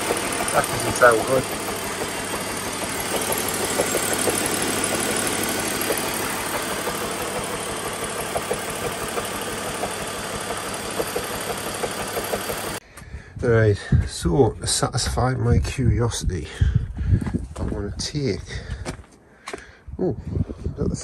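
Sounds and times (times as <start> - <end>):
car engine idling unevenly: 0.0 - 12.8
sharp engine ticks: 0.0 - 12.8.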